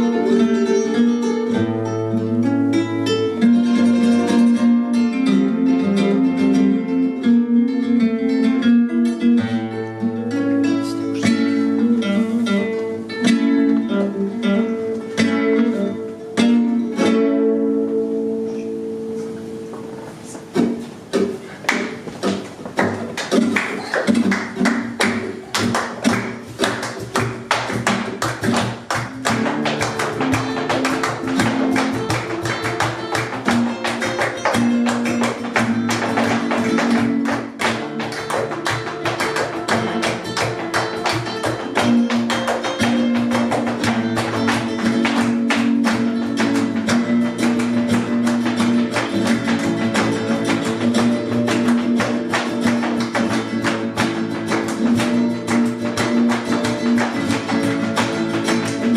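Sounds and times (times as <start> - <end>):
flamenco acoustic guitars: 0.0 - 58.9
fast percussive strikes: 20.6 - 58.9.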